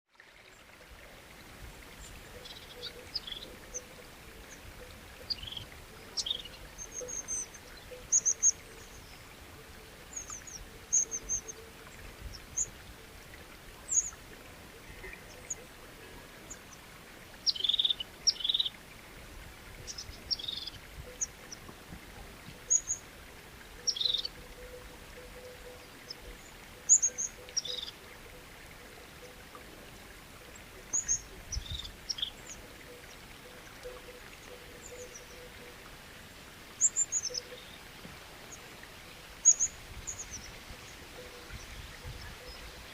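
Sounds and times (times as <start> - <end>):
background hiss: 0.1 - 42.9
birds chirping: 2.0 - 9.3, 16.4 - 18.8, 19.8 - 21.7, 23.8 - 28.4, 36.8 - 38.7.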